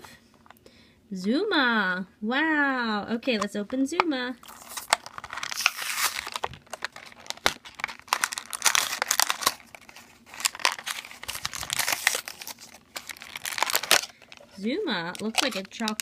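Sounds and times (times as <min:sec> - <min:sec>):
packaging being torn and crinkled: 0:04.4 - 0:16.0.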